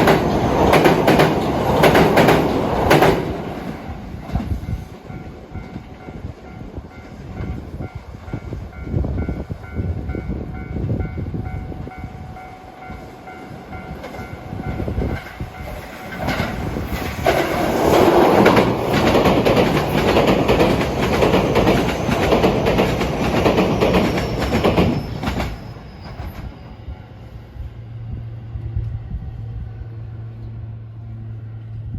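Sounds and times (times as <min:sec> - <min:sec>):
train wheels clacking over rails: 0:00.0 - 0:08.4, 0:12.8 - 0:26.7.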